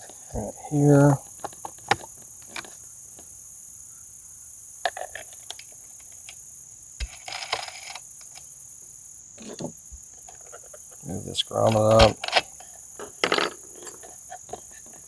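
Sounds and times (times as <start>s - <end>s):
insects chirping: 0.0s - 15.0s
parts handled clicking: 7.0s - 8.5s, 11.6s - 15.0s.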